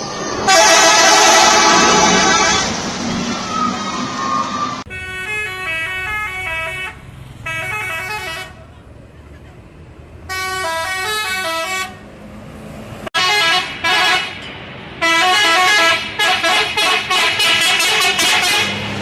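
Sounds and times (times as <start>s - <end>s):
multi-tone musical bus horn: 0.4s - 2.8s, 4.8s - 8.6s, 10.3s - 12.0s, 13.1s - 14.4s, 15.0s - 18.9s.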